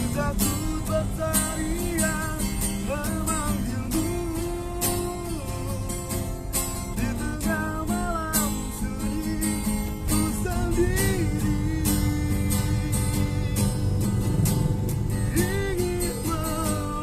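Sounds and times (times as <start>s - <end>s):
strummed acoustic guitar: 0.0s - 17.0s
person singing: 7.0s - 13.7s, 15.3s - 17.0s.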